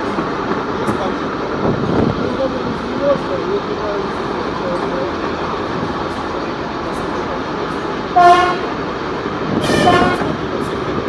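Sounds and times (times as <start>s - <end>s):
diesel locomotive running: 0.0s - 11.0s
locomotive horn toots: 8.1s - 8.8s, 9.5s - 10.4s.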